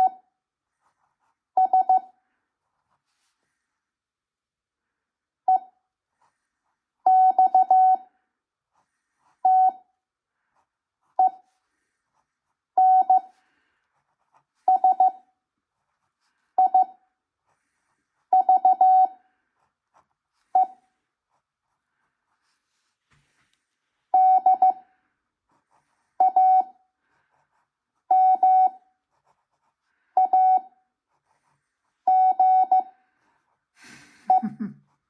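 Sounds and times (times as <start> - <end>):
morse code beeps: 0.0 - 0.2, 1.6 - 2.1, 7.1 - 8.1, 9.4 - 9.9, 11.2 - 11.4, 12.8 - 13.3, 14.7 - 15.2, 16.6 - 17.0, 18.3 - 19.2, 20.5 - 20.8, 24.1 - 24.9, 26.2 - 26.8, 28.1 - 28.8, 30.2 - 30.8, 32.1 - 33.0.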